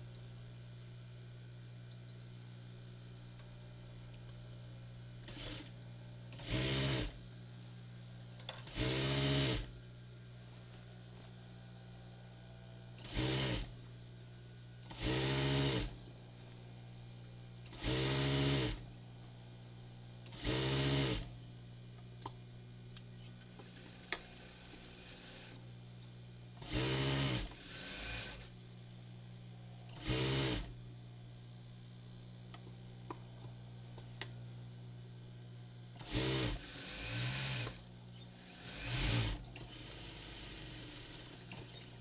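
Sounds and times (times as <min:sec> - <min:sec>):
electric sewing machine stitching: 0:05.3 - 0:05.7, 0:06.3 - 0:07.2, 0:08.6 - 0:09.7, 0:13.0 - 0:13.7, 0:14.9 - 0:16.0, 0:17.7 - 0:18.8, 0:20.3 - 0:21.3, 0:26.6 - 0:28.5, 0:30.0 - 0:30.7, 0:36.0 - 0:42.0.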